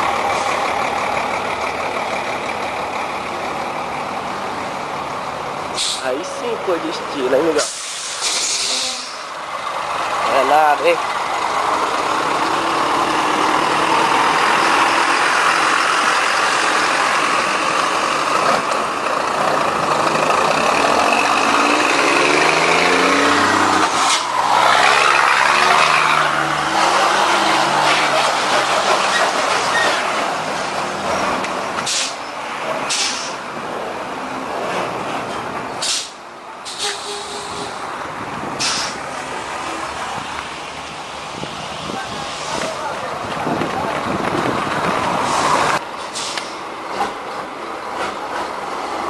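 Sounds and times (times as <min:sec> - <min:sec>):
truck engine running: 0:00.0 - 0:05.8, 0:09.3 - 0:31.8
short hisses: 0:05.8 - 0:06.0, 0:07.6 - 0:09.2, 0:32.9 - 0:33.4, 0:38.6 - 0:39.0.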